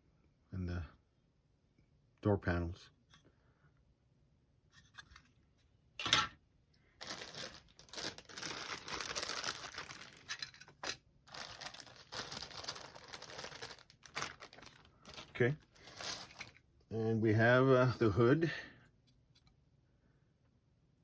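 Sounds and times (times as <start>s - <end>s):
plastic bag crinkling: 7.0s - 16.6s.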